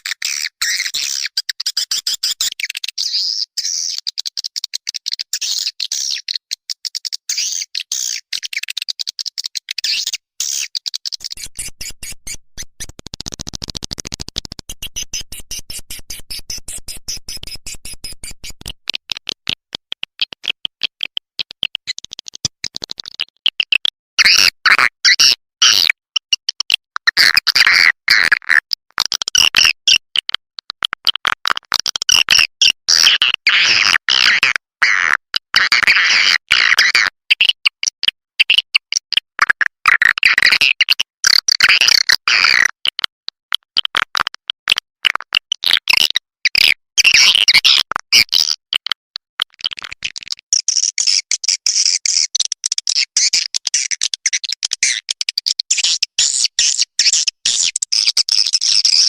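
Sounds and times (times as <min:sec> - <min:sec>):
high bird chirps and twitters: 0:00.0 - 0:19.3, 0:49.6 - 0:59.0.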